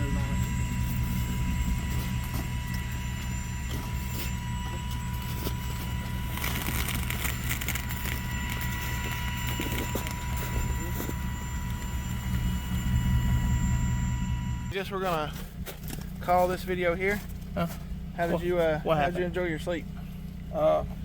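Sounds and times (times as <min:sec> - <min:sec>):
low engine hum: 0:00.0 - 0:21.0
rustling: 0:01.1 - 0:12.8.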